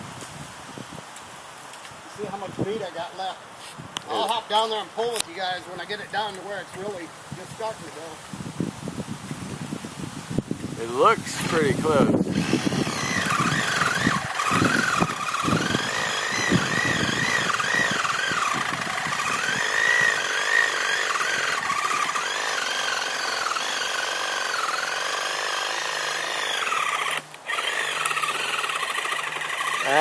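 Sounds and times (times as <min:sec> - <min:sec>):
reciprocating saw cutting wood: 0:10.8 - 0:30.0.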